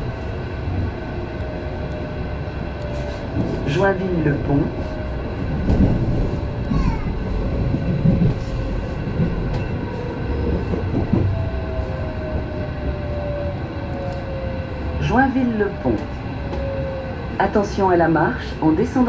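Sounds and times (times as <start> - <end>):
train rumble: 0.0 - 19.0.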